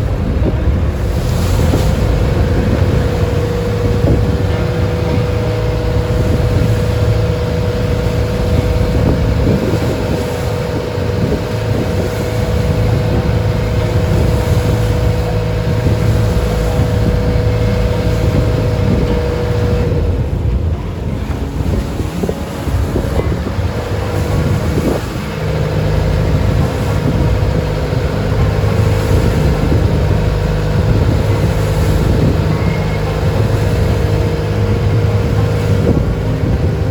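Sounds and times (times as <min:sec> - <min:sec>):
boat engine hum: 0:00.0 - 0:36.9
high engine whine: 0:00.0 - 0:36.9
rushing water: 0:00.0 - 0:36.9
wind on the microphone: 0:00.0 - 0:36.9.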